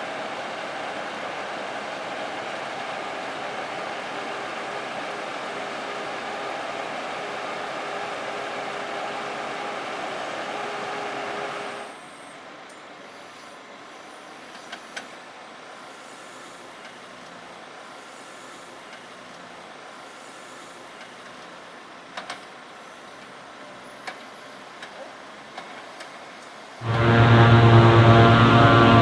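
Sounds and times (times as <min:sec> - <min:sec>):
farm machinery running: 0:26.8 - 0:29.0.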